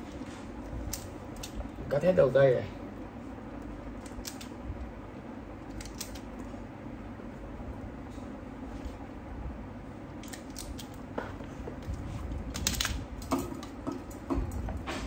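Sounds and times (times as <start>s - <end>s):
wires being handled: 0.0s - 6.7s, 10.1s - 15.0s
steady background noise: 0.0s - 15.0s.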